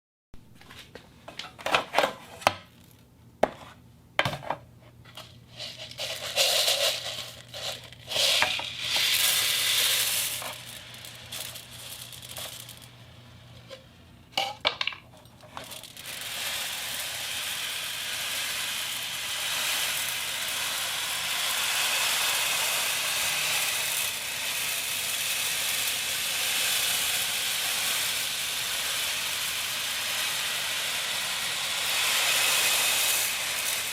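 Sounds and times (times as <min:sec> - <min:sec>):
clicks and knocks of hard objects: 0:13.6 - 0:16.1
steady hiss like surf: 0:16.1 - 0:33.9.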